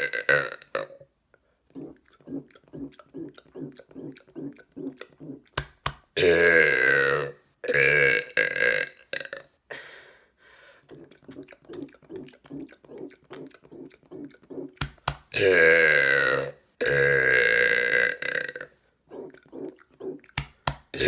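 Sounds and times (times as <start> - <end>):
man burping loudly: 0.0 - 1.0, 6.2 - 9.5, 10.9 - 20.3.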